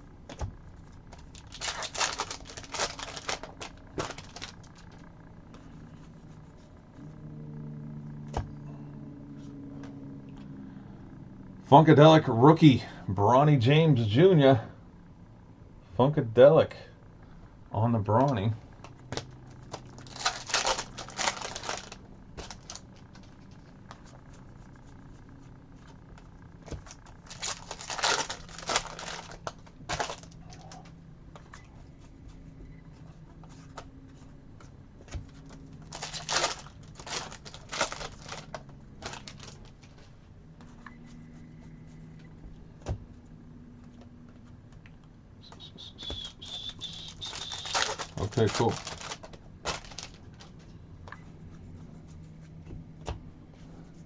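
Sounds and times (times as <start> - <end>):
faint low hum: 0.0 - 54.0
trading cards and wrappers rustling: 1.0 - 6.8, 18.2 - 25.0, 25.7 - 42.2, 45.6 - 50.8.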